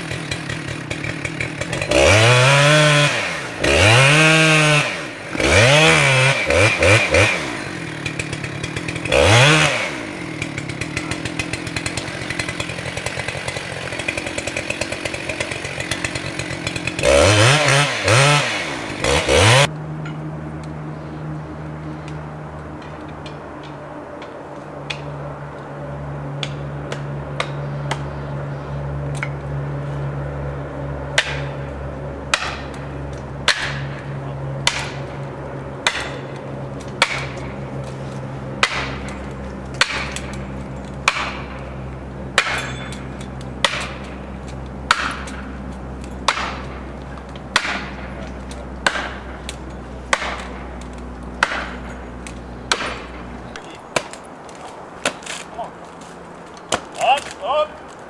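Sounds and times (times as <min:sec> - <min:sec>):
low engine hum: 0:00.0 - 0:56.8
hammer striking wedge: 0:42.4 - 0:44.0, 0:44.9 - 0:45.4, 0:51.4 - 0:52.0.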